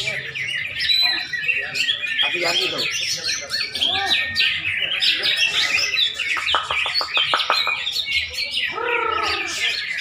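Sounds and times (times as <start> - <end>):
bird chirping and twittering: 0.0 - 10.0
sharp clicking bird notes: 6.2 - 8.2.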